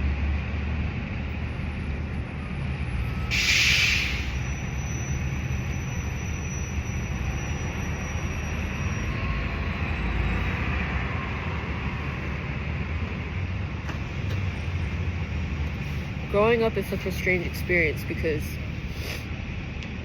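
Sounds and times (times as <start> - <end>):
road traffic passing: 0.0 - 20.0.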